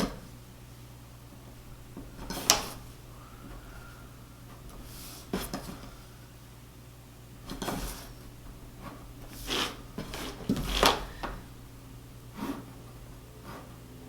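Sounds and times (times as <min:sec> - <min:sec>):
pencil scraping on paper: 0:08.8 - 0:11.1, 0:12.3 - 0:13.8.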